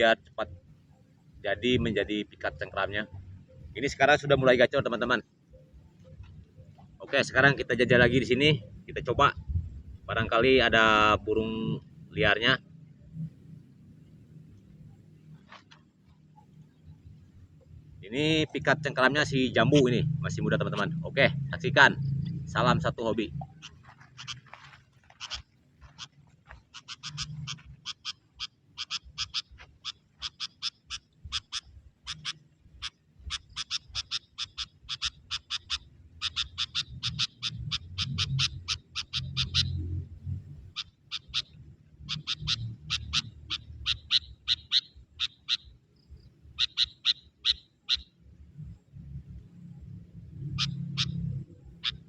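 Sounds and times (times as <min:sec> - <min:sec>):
bird calling in sharp notes: 0:25.1 - 0:52.0.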